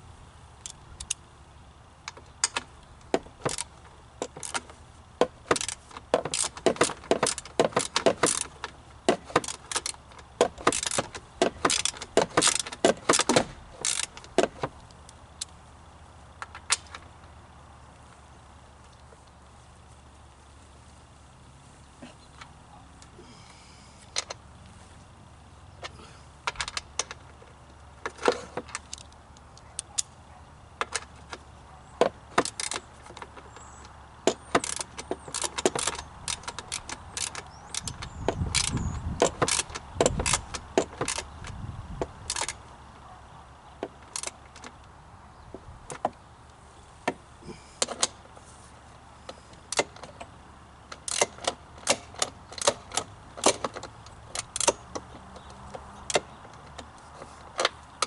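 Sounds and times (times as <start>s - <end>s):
lawn mower rumble: 0.0s - 58.0s
metallic clicks of hand tools: 2.0s - 15.6s, 28.0s - 30.2s, 30.8s - 42.6s, 43.8s - 44.9s, 50.9s - 58.0s.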